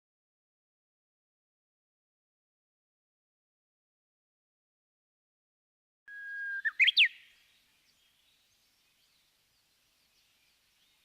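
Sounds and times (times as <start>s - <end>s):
bird singing whistled phrase: 6.1s - 7.4s
faint outdoor ambience: 6.1s - 11.0s.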